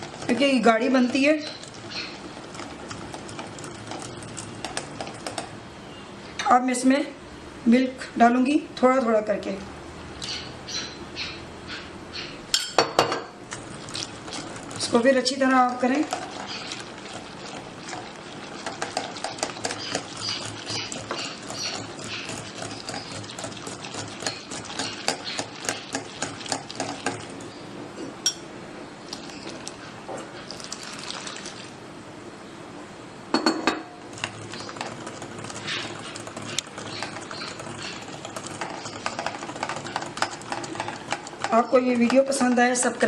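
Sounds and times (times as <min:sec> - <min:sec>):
liquid sloshing: 0:13.5 - 0:27.6, 0:29.1 - 0:31.8
whisk clicking against container: 0:18.6 - 0:27.3, 0:34.2 - 0:42.2
utensil clatter: 0:34.2 - 0:42.6.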